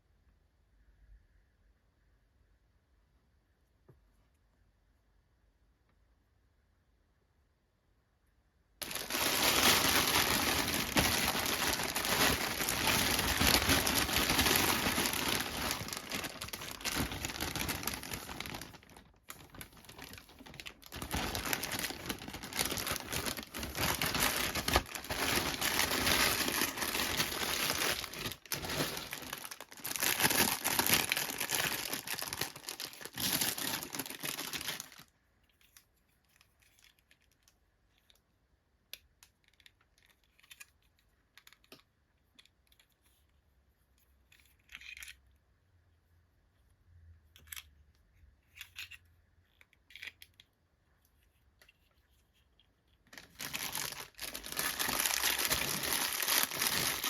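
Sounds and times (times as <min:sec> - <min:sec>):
packaging crinkling and rustling: 0:08.8 - 0:35.1, 0:51.7 - 0:57.0.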